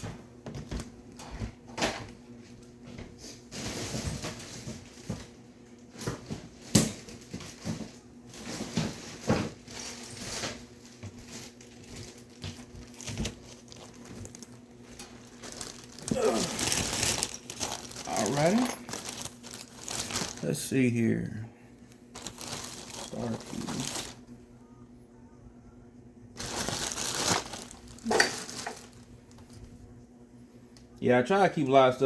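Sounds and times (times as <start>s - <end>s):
steady low hum: 5.4s - 32.0s
hands rummaging through metal tools: 15.0s - 20.4s, 22.2s - 24.2s, 26.4s - 29.0s.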